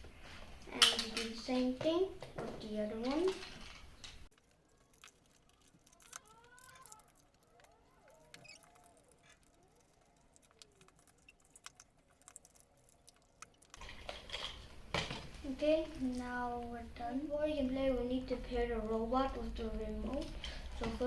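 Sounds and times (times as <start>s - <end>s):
small plastic clicks: 3.3s - 14.6s.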